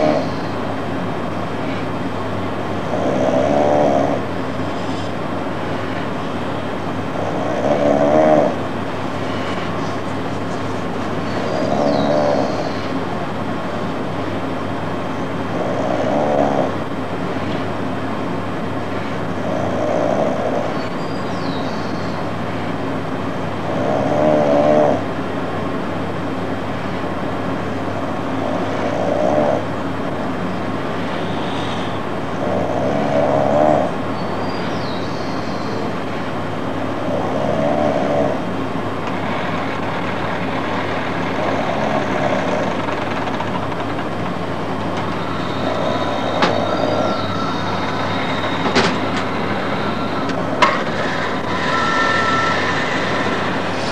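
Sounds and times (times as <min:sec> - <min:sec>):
person snoring: 0:00.0 - 0:00.4, 0:02.9 - 0:04.2, 0:07.2 - 0:08.6, 0:23.7 - 0:25.0.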